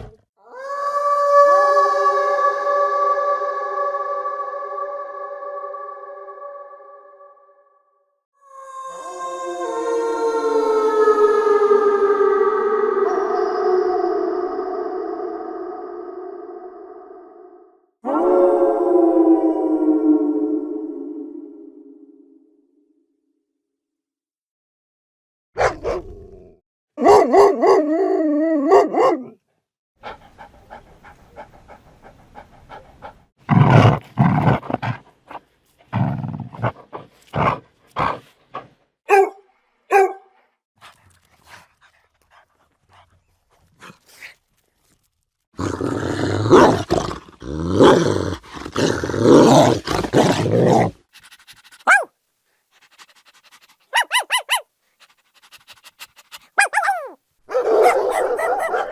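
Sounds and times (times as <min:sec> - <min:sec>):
dog howling: 0:00.4 - 0:07.4, 0:08.5 - 0:22.2, 0:56.6 - 0:58.9
dog yipping: 0:25.6 - 0:26.0, 0:39.1 - 0:40.2, 0:51.8 - 0:52.1, 0:53.9 - 0:54.7, 0:56.6 - 0:58.9
dog barking: 0:25.6 - 0:26.1, 0:27.0 - 0:27.9, 0:28.7 - 0:29.4, 0:39.1 - 0:40.4, 0:51.8 - 0:52.1, 0:53.9 - 0:54.7, 0:56.6 - 0:58.9
dog snarling and growling: 0:32.7 - 0:38.8, 0:45.6 - 0:52.0.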